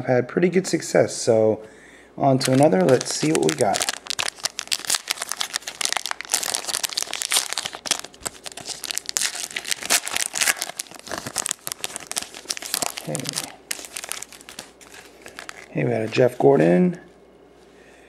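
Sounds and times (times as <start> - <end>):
plastic wrapping tearing and crinkling: 2.4 - 16.4.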